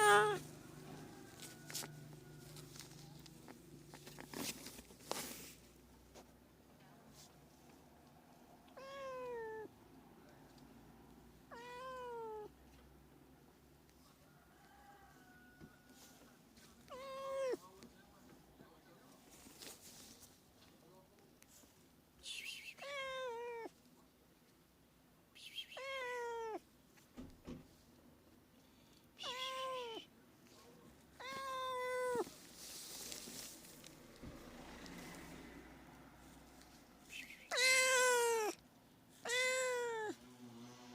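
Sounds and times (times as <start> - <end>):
cat meowing: 0.0 - 0.5, 8.7 - 9.7, 11.5 - 12.5, 16.9 - 17.6, 22.8 - 23.7, 25.6 - 26.6, 29.2 - 30.1, 31.2 - 32.4, 37.3 - 38.6, 39.2 - 40.2.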